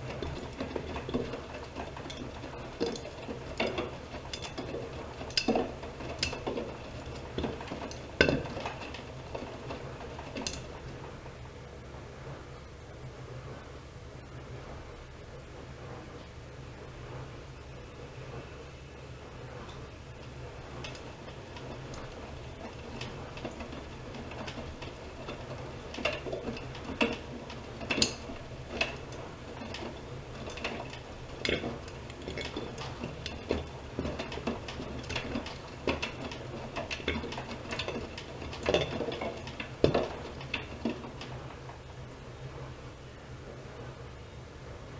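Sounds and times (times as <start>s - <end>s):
washing machine humming: 0.0s - 44.9s
clicks and clattering knocks: 20.6s - 41.4s.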